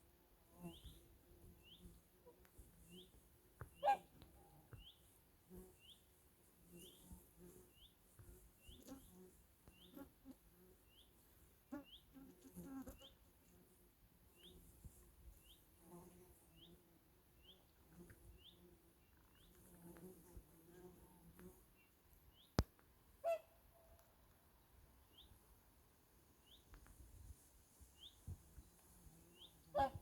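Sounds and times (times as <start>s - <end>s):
swans low murmuring calls: 23.2s - 23.5s.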